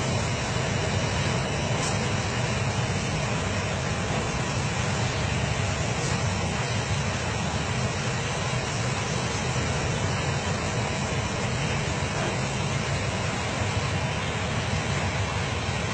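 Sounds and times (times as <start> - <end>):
low roar of noise: 0.0 - 15.9.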